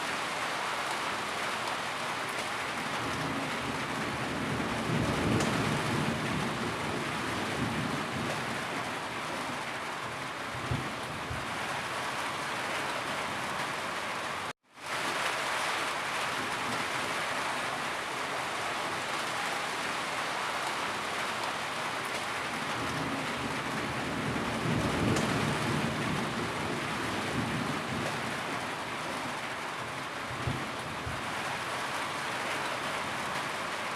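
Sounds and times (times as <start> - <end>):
heavy rain falling: 0.0 - 33.9
low thunder rumble: 22.8 - 28.4.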